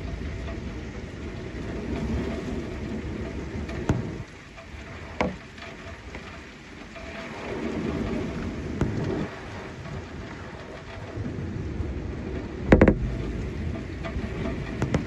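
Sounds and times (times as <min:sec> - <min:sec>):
heavy rain: 0:00.0 - 0:15.0
thunder rumbling: 0:07.4 - 0:15.0.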